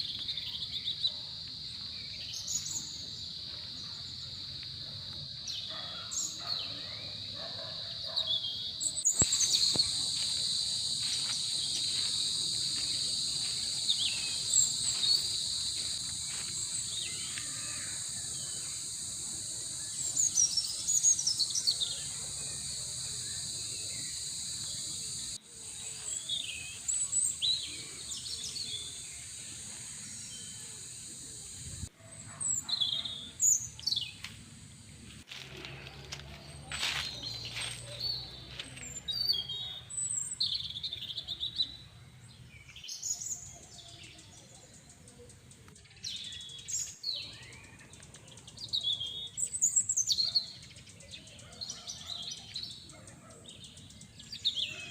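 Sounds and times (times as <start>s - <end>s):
crickets chirping: 0.0s - 41.8s
bird chirps: 5.4s - 34.3s.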